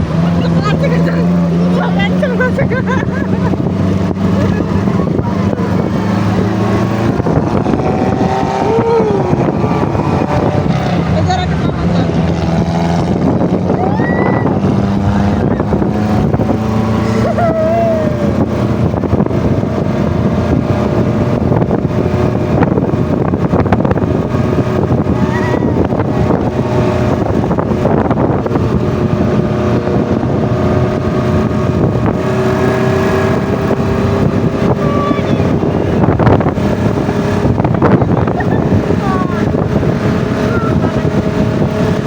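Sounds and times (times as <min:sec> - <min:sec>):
vehicle engine running: 0:00.0 - 0:42.0
wind buffeting microphone: 0:00.0 - 0:42.0.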